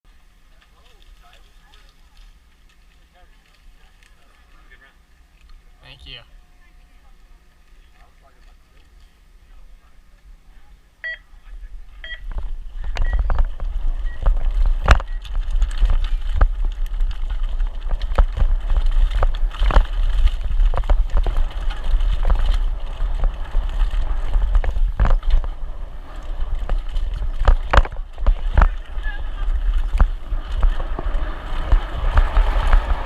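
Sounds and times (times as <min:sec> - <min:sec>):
electronic timer beeps: 0:11.0 - 0:11.2, 0:12.0 - 0:12.3, 0:13.0 - 0:13.3
bike rattling over terrain: 0:11.5 - 0:33.0
wind rush on microphone: 0:12.2 - 0:33.0.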